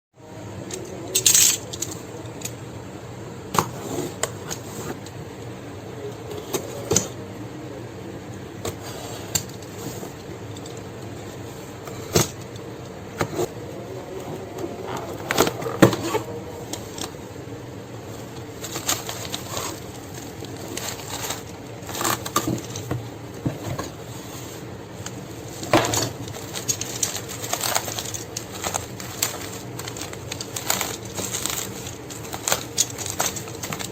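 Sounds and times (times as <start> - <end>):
low background hum: 0.2 - 33.9
packaging clicks taps and rustles: 18.3 - 24.0, 25.0 - 33.9.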